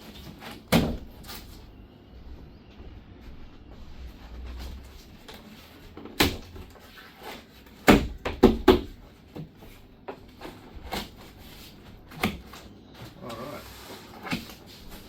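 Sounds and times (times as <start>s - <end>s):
cardboard panels knocking and thumping: 0.0s - 1.6s, 4.9s - 11.4s, 12.1s - 12.7s, 14.2s - 14.8s.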